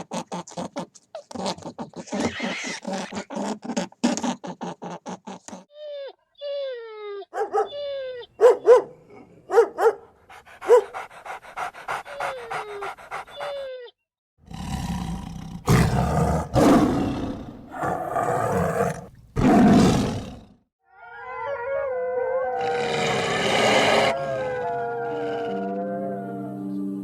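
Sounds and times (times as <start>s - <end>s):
wavering pitched call: 23.8s - 26.7s.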